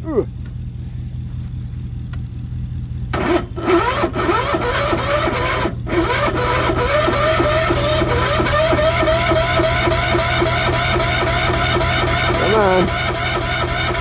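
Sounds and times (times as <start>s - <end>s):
electric starter cranking engine: 3.1s - 14.0s.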